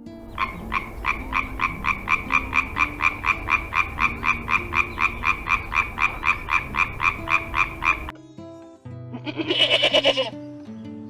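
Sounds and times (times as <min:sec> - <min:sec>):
frog croaking: 0:00.2 - 0:08.1.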